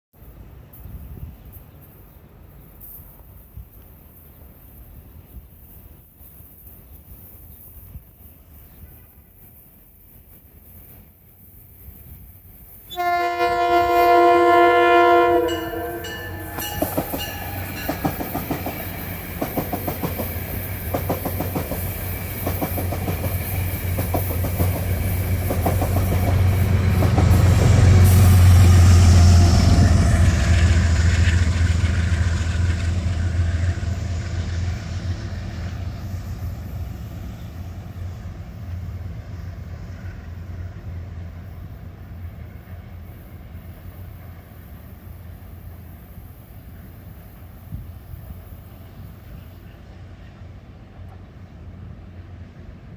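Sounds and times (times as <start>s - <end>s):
deep train rumble: 0.2s - 52.9s
loud multi-tone train horn: 12.9s - 18.2s
wheels clicking over rail joints: 15.6s - 27.9s.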